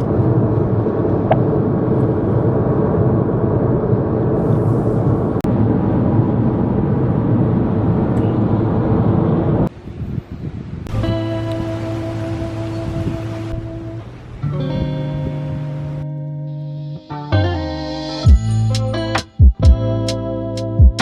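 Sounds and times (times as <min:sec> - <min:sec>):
loud low rumbling: 0:00.0 - 0:09.9.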